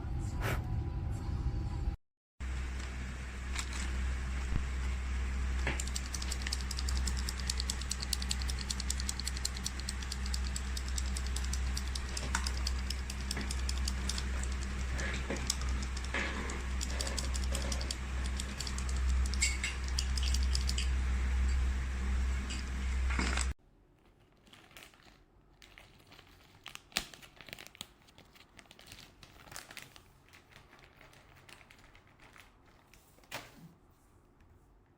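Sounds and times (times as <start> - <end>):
steady low hum: 0.0 - 23.6
mechanical keyboard clicking: 5.6 - 20.9.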